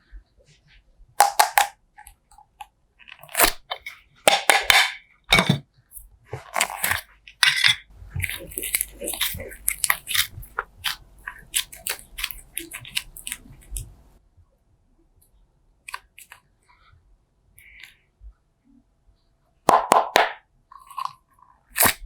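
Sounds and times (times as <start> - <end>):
slime squishing and crackling: 6.4 - 7.1, 7.9 - 14.2, 21.7 - 22.0.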